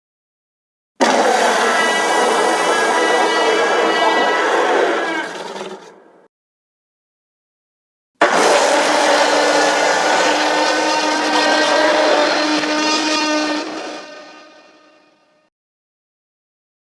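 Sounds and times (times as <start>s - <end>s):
dinosaur roar: 1.0s - 6.2s, 8.2s - 14.3s.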